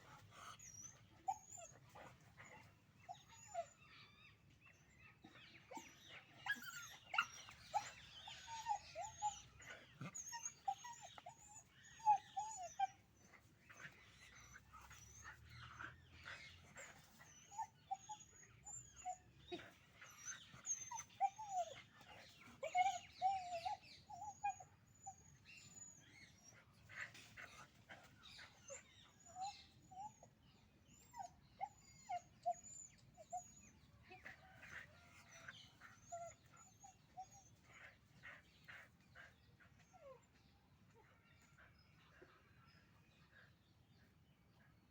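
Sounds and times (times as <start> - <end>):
puppies whimpering and yipping: 0.1 - 4.5, 5.2 - 41.7.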